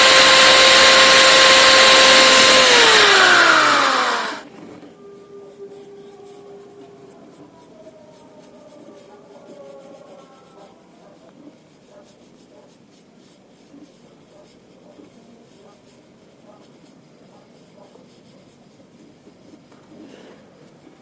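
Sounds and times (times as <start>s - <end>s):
rubbing and scratching on surface: 4.5s - 21.0s.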